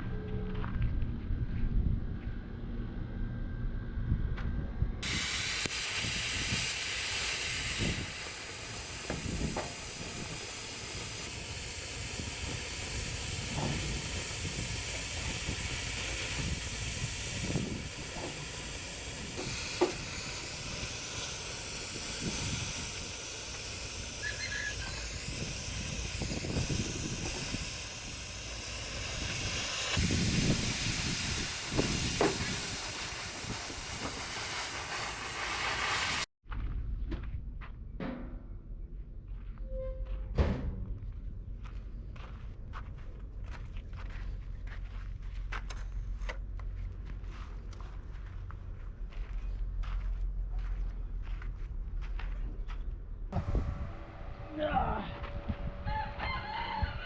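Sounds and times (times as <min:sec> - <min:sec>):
strong steady hiss: 0:05.0 - 0:36.3.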